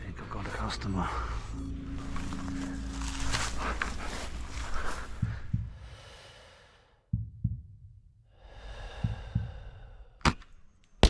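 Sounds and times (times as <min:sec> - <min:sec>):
heartbeat thumps: 0:00.6 - 0:06.2, 0:07.1 - 0:08.1, 0:08.7 - 0:10.0.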